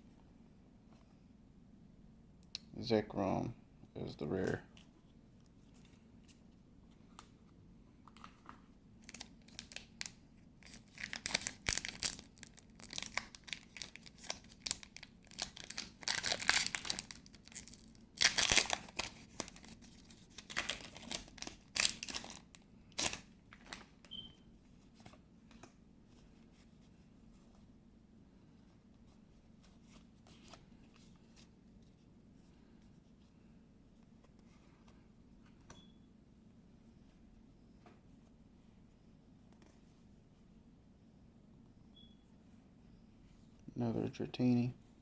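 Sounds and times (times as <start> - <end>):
foil wrapper tearing and crinkling: 9.0 - 23.9.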